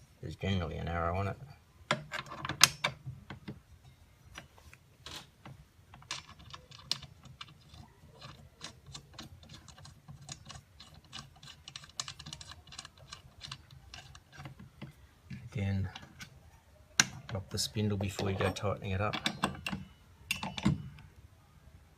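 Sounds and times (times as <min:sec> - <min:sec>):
metal clicks and taps: 0:18.0 - 0:21.1.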